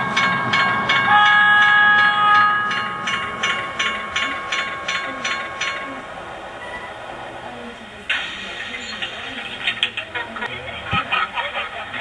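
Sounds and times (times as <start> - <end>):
train wheels clicking: 0.0 - 6.1, 8.1 - 10.5
steady high tones: 0.0 - 7.0.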